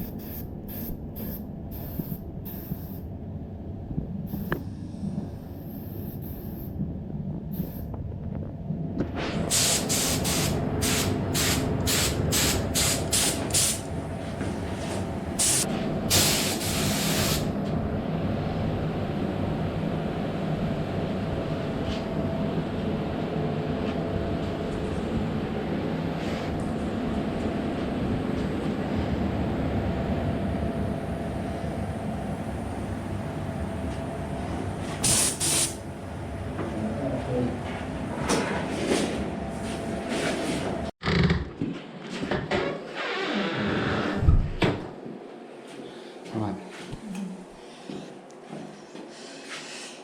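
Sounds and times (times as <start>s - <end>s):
air spray gun hissing: 0.0s - 3.0s, 5.5s - 6.7s, 9.5s - 13.9s, 15.4s - 17.5s, 35.0s - 35.8s
steady low hum: 0.0s - 41.0s.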